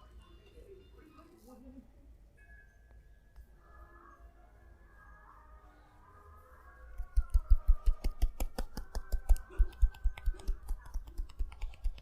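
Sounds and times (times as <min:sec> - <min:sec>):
hands slapping on body: 0:07.0 - 0:12.0.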